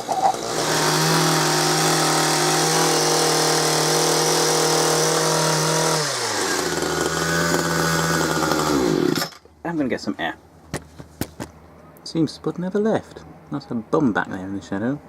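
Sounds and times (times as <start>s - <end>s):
hedge trimmer engine running: 0.0s - 9.5s.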